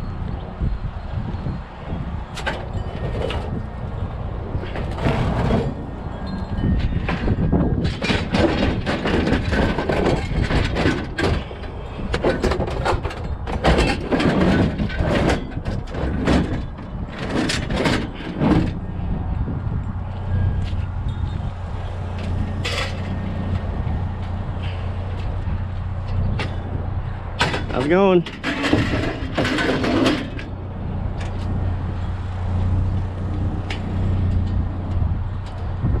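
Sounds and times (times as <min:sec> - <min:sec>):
scrap metal clanking: 0:02.3 - 0:19.1, 0:20.7 - 0:30.6
pickup truck engine hum: 0:28.9 - 0:36.0.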